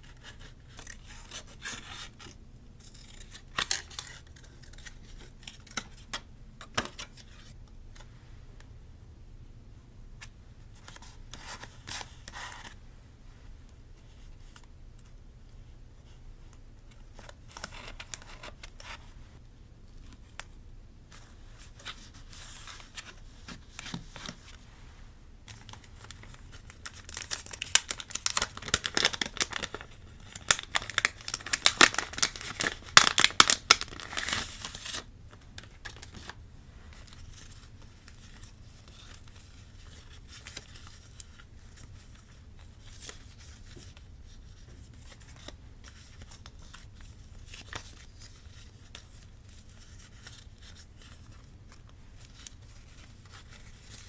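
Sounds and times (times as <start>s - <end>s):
paper crackling: 25.5s - 36.4s
paper rustling: 25.5s - 54.0s.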